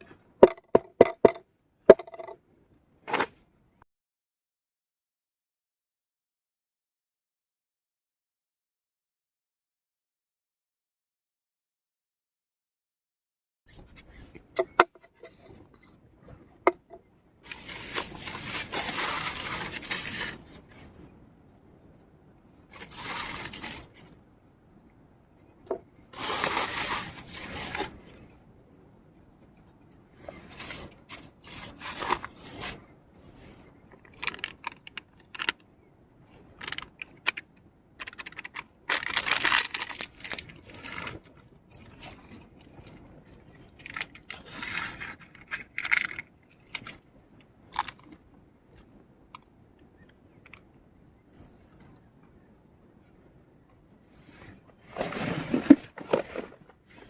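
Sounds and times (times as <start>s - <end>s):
scraping and rustling: 13.7s - 21.0s, 22.7s - 24.2s, 26.1s - 28.2s, 29.4s - 35.5s, 54.1s - 57.0s.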